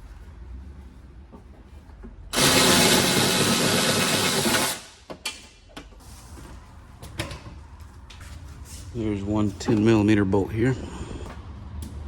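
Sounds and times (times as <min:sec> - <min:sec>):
power tool running: 0:02.3 - 0:04.9.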